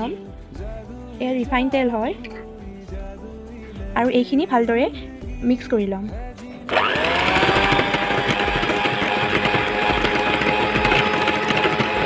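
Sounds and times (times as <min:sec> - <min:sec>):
electric hand mixer whining: 0:06.6 - 0:12.0.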